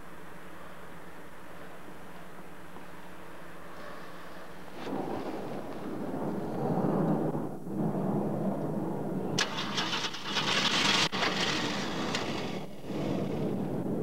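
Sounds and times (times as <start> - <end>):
car engine cranking: 9.4 - 12.6.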